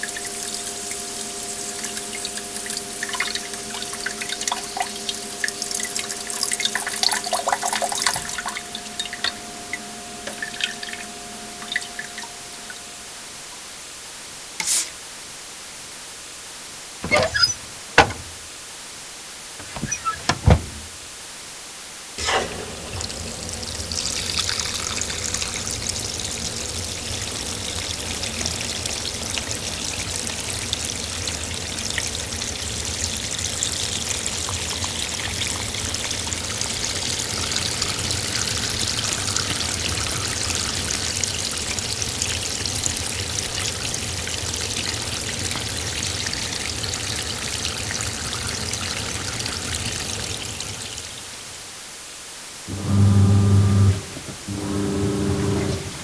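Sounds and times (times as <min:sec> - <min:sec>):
water pouring: 0:00.0 - 0:12.9, 0:22.2 - 0:51.2
sharp clicks and knocks: 0:17.0 - 0:18.5.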